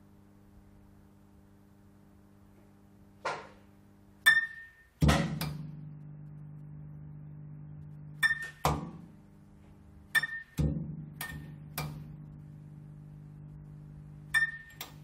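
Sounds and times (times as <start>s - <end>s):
neon tube electrical hum: 0.0s - 15.0s
sharp ringing clicks: 4.3s - 4.9s, 8.2s - 8.7s, 10.1s - 10.6s, 14.3s - 15.0s.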